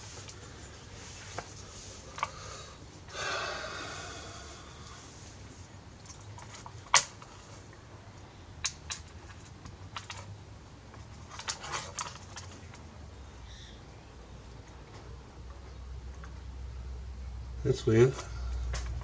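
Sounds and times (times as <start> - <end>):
faint low hum: 0.0 - 8.3.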